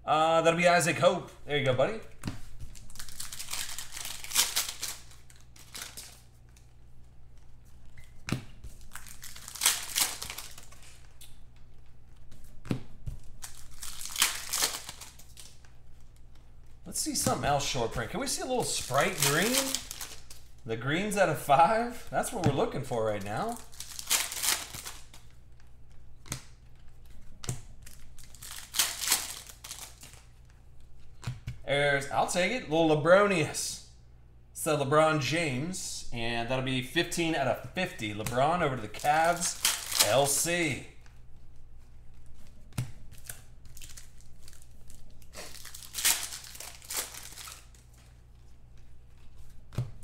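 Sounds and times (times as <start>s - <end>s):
cards rustling: 1.5s - 31.6s, 37.1s - 50.0s
foil wrapper tearing and crinkling: 2.7s - 6.6s, 8.7s - 11.2s, 13.2s - 16.4s, 18.2s - 20.6s, 23.2s - 25.4s, 27.8s - 30.2s, 38.9s - 40.6s, 43.0s - 48.1s.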